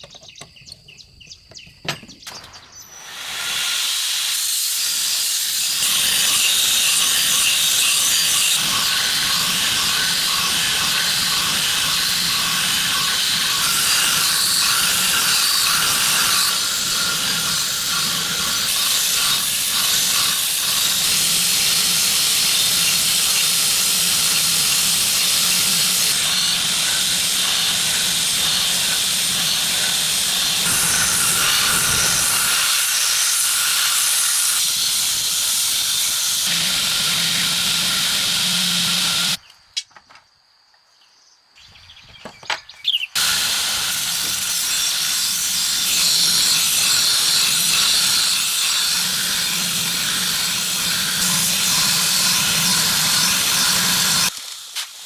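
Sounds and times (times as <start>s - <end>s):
knife grinding hiss: 2.7s - 39.4s.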